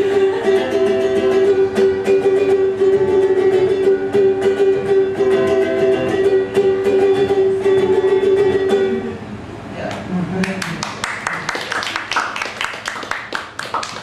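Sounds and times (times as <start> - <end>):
person singing: 0.0 - 9.2
ukulele strumming: 0.0 - 9.4.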